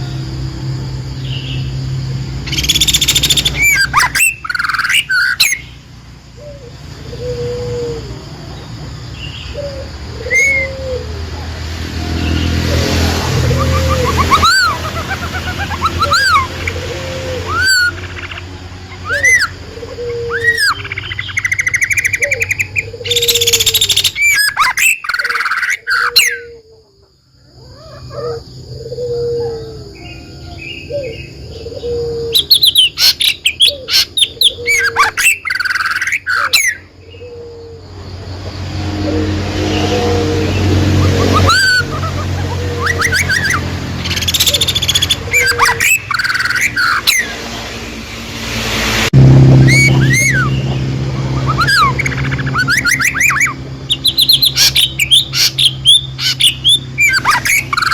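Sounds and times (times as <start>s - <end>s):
birds chirping and singing: 0.0s - 57.9s
steady low hum: 41.8s - 57.8s
low short repeated note: 49.1s - 51.0s.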